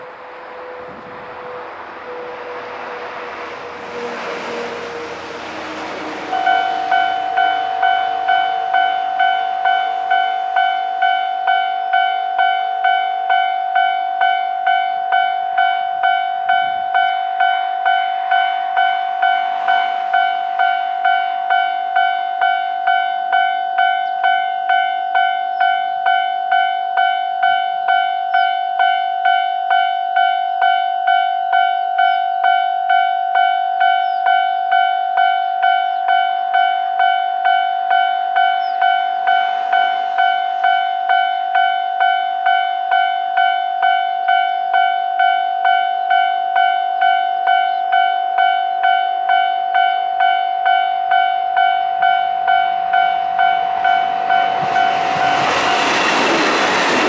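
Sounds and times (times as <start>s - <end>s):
rushing noise with falling tone: 0.0s - 12.5s, 15.7s - 23.6s, 38.0s - 42.4s, 51.0s - 57.0s
level-crossing warning bell: 0.0s - 57.0s.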